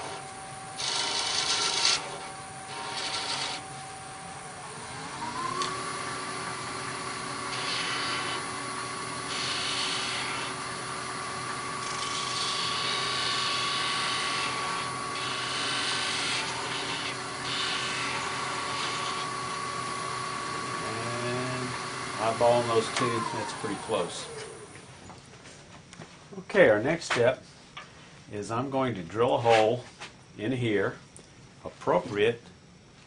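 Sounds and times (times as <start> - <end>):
wood lathe motor humming: 0.0 - 24.9
gouge scraping wood: 0.8 - 3.6, 7.4 - 8.6, 9.2 - 10.7, 11.8 - 19.4.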